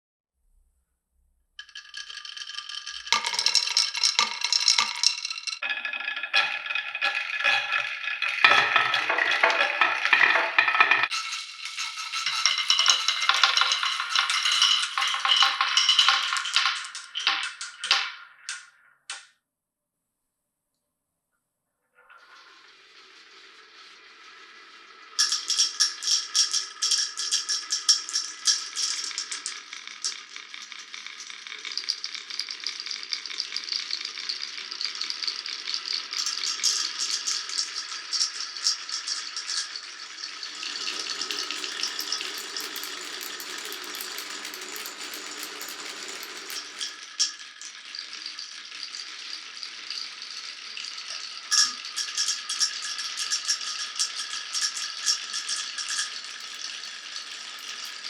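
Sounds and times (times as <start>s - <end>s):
marbles clattering on wooden run: 1.6s - 18.6s, 25.2s - 32.6s, 36.0s - 47.4s, 54.1s - 58.0s.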